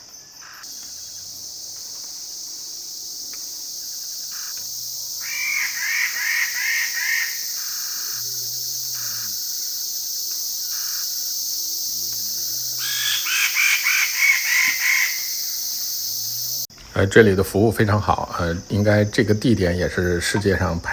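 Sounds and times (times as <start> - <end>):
insects droning: 0.0 - 20.9
bird calling repeated notes: 12.8 - 15.5.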